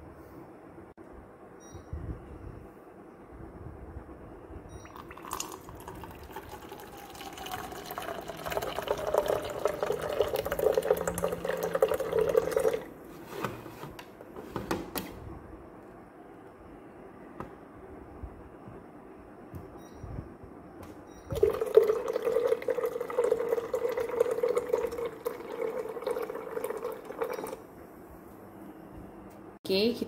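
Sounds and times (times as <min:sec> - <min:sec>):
water pouring into a container: 0:04.9 - 0:12.9, 0:21.3 - 0:27.6.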